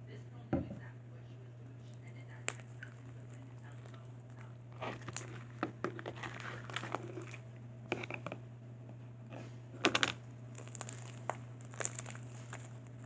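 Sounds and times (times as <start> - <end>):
steady low hum: 0.0 - 13.0
slime squelching: 2.3 - 8.4, 9.3 - 13.0.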